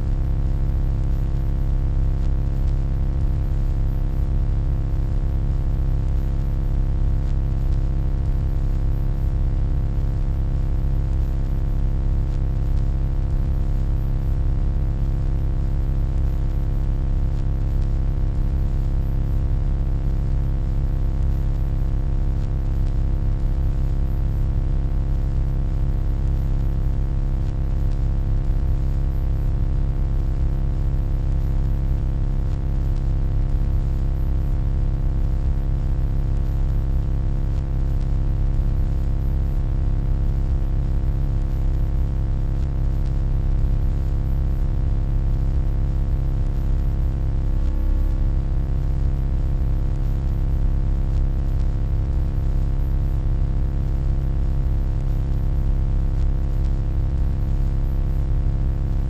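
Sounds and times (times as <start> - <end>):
deep electronic hum: 46.5 - 48.8.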